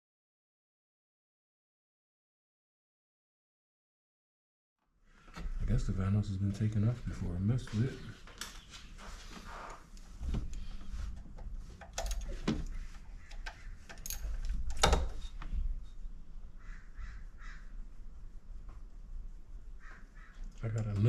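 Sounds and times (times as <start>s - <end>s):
hand tools clinking on metal: 11.8s - 12.7s, 13.9s - 15.0s
short rasping calls: 16.6s - 17.7s.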